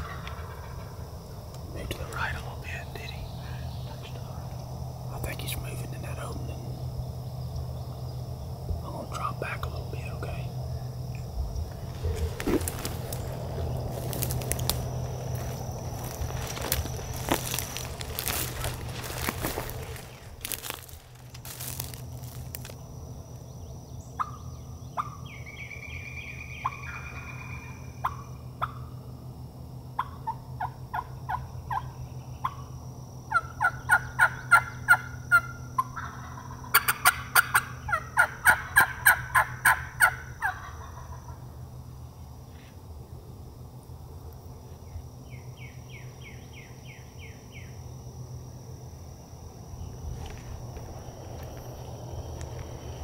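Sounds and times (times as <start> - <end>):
turkey gobbling: 0.0 - 1.0, 24.2 - 24.4, 26.6 - 28.9, 30.0 - 32.6, 33.3 - 41.5
turkey yelping: 0.0 - 1.0, 26.6 - 28.8, 33.3 - 41.4.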